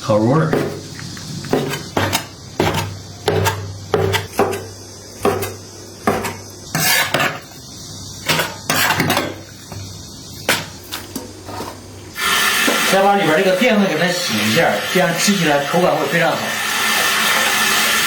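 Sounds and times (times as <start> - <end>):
knife blade striking cutting board: 1.5 - 7.4.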